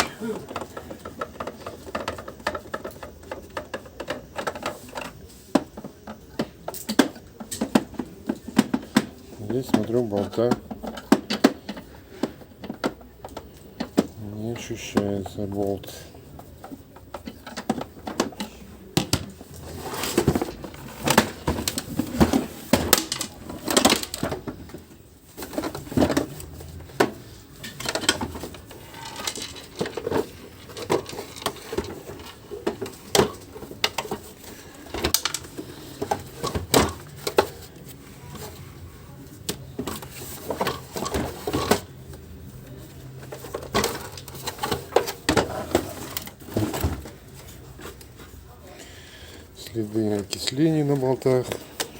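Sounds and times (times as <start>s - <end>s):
plastic housing rattling: 25.4s - 37.7s.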